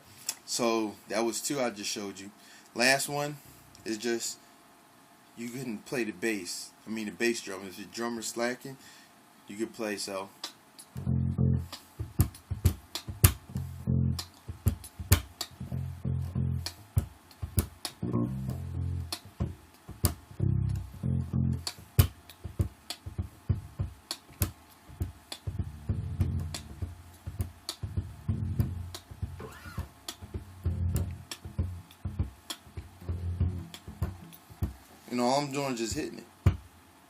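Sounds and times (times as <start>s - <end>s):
percussive electric bass: 11.0s - 34.8s.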